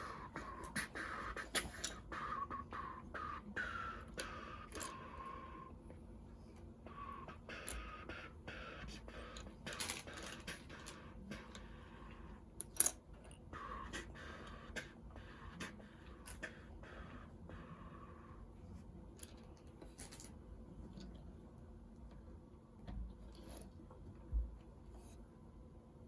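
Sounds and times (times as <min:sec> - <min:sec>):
plastic pieces clicking and rattling: 0:09.4 - 0:11.0, 0:12.6 - 0:13.0.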